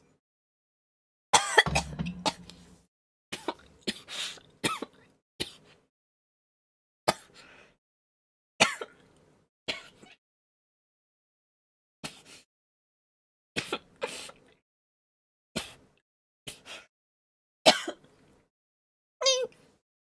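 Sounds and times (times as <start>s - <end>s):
girl coughing: 1.4s - 2.0s, 17.7s - 18.0s.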